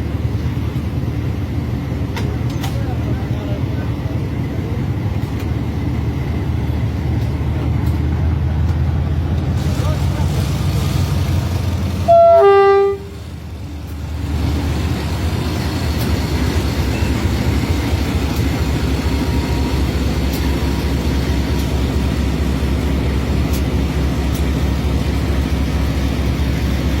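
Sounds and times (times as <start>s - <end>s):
vehicle engine rumble: 0.0s - 27.0s
two-note horn blast: 12.1s - 13.2s.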